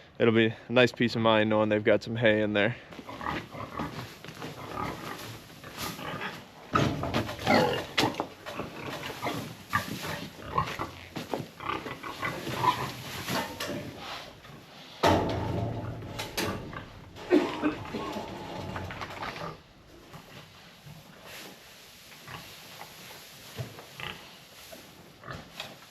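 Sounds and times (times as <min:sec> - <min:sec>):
pigs grunting: 0:03.0 - 0:20.1.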